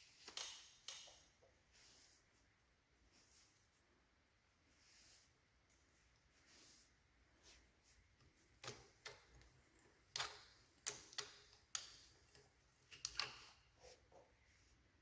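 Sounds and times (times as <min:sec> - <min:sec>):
tools and parts clicking: 0:10.1 - 0:13.6.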